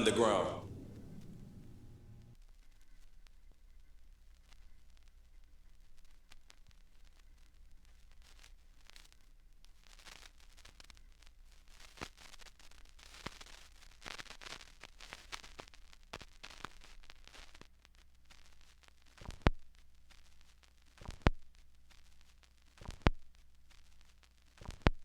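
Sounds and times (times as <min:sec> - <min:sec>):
low steady hum: 0:00.0 - 0:02.4
static hiss and crackle: 0:00.0 - 0:25.0.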